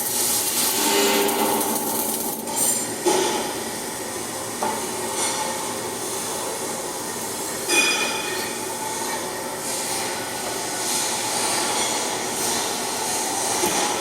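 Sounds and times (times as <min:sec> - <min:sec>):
welding arc crackling hiss: 0:00.0 - 0:05.0.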